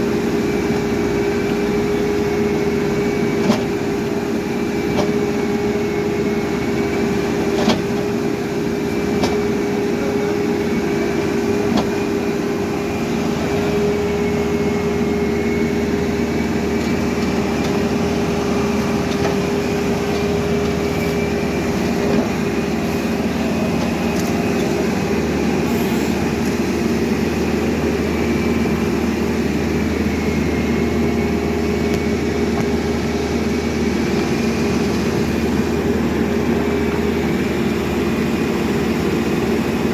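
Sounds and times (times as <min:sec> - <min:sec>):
diesel engine running: 0:00.0 - 0:39.9
high whine: 0:08.8 - 0:39.9.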